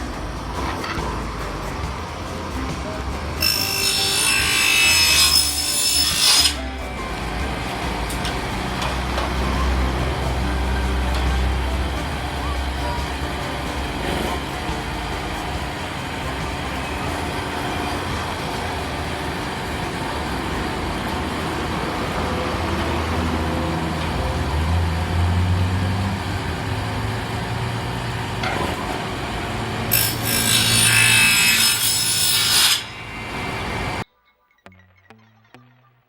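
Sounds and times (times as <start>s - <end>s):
vehicle engines humming: 0.0s - 3.4s, 6.6s - 30.0s
loud harsh rushing noise: 6.6s - 30.0s.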